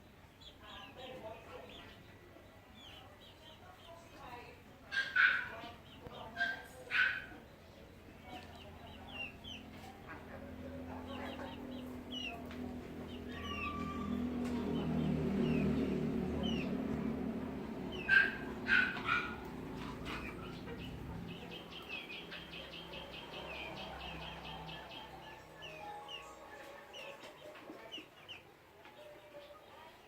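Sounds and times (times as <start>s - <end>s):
chickens clucking: 2.8s - 30.0s
chicken squawks: 13.3s - 14.2s.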